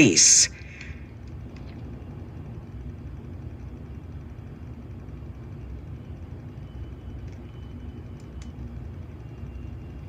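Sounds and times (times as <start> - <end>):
low rumbling noise: 0.0 - 7.0
faint hum: 0.0 - 10.0.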